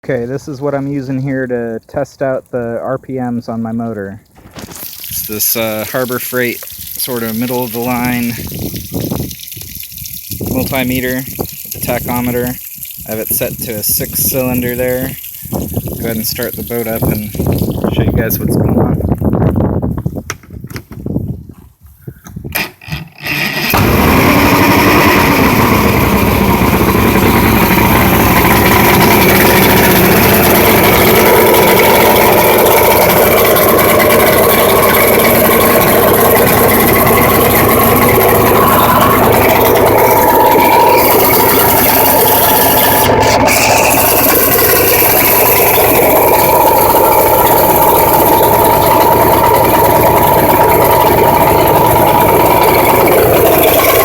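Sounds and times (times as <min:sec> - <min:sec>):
boat engine idling: 0:05.2 - 0:08.7, 0:11.8 - 0:18.6, 0:23.7 - 0:54.0.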